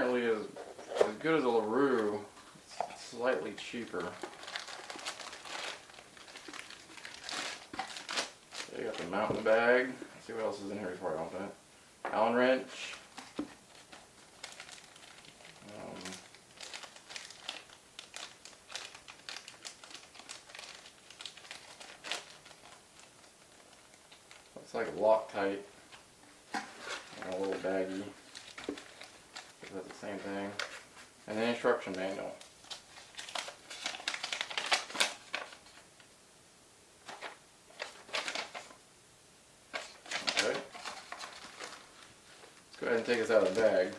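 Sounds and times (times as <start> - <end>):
plastic bags crinkling: 2.8 - 10.5, 12.9 - 25.6, 26.5 - 35.8, 39.7 - 43.9.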